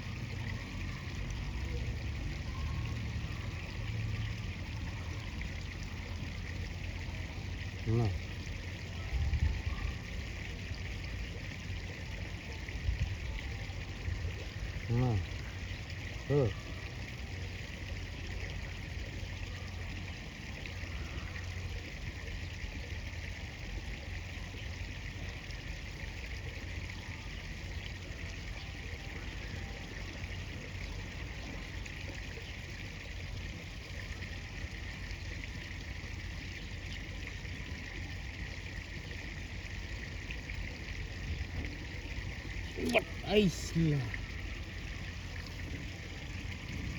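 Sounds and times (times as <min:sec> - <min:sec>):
river water rushing: 0:42.5 - 0:46.4.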